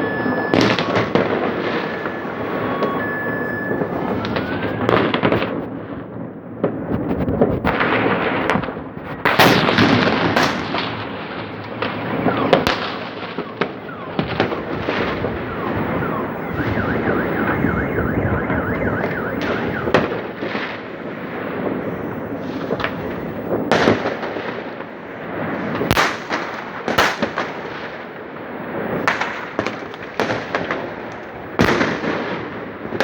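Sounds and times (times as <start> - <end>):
car alarm wailing: 0.0 - 5.7, 11.8 - 24.0
fireworks bangs: 0.0 - 33.0
fireworks crackling: 0.0 - 33.0.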